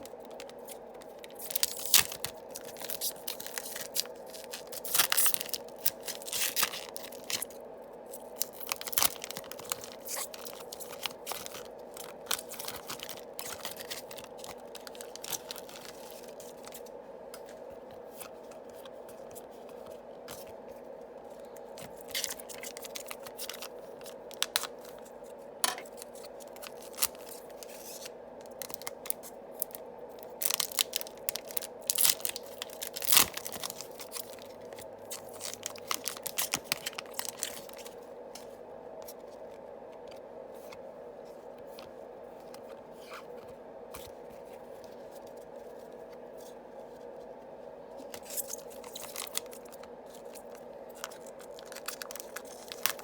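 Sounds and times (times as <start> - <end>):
foil wrappers tearing and crinkling: 0.0 - 16.8, 21.8 - 25.0, 25.9 - 38.0, 48.2 - 53.0
steady hum: 0.0 - 53.0.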